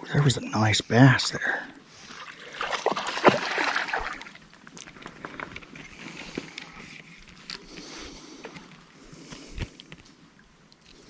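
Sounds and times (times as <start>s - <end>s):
water splashing in river: 2.0s - 4.5s.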